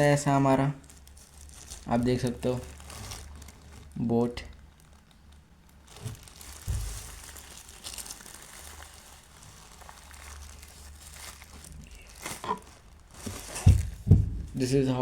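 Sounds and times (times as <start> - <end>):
plastic wrapping crinkling: 0.0 - 14.7
soft thump: 6.0 - 7.1, 13.2 - 14.6.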